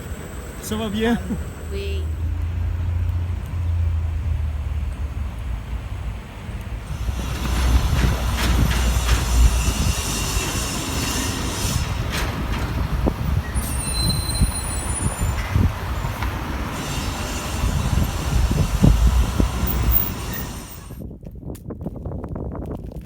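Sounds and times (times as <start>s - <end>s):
vehicle low rumble: 0.0s - 21.1s
knocks and clatter: 6.9s - 13.8s
brief high squeal: 8.8s - 12.1s, 13.4s - 15.5s.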